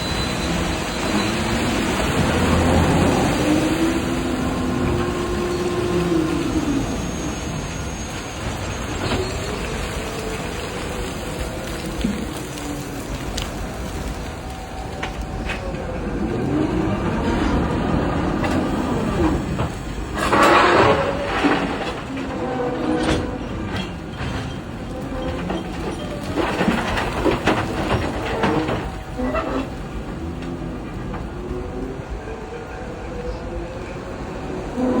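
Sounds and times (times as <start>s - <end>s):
excavator motors whining: 0.0s - 35.0s
ore pouring into wagon: 0.4s - 17.3s.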